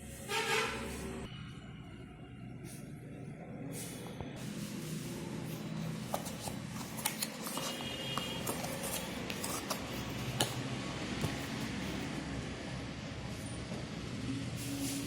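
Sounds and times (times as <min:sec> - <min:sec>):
packaging clicks and rustles: 0:05.6 - 0:10.6.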